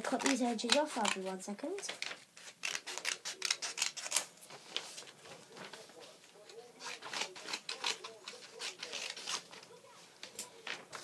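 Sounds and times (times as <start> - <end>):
scissors snipping paper: 0.0 - 4.4, 6.4 - 11.0.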